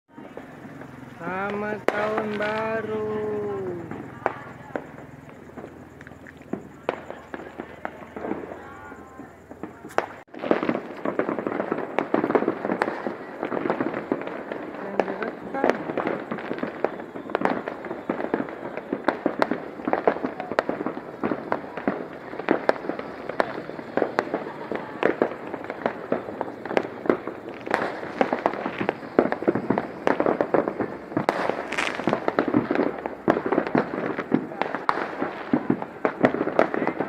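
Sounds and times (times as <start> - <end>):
firecrackers banging: 0.1 - 37.0.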